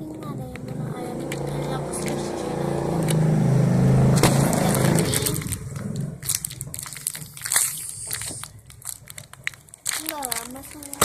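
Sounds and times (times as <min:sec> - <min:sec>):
vehicle engine running: 0:00.0 - 0:11.0
plastic crinkling and clicking: 0:04.2 - 0:11.0.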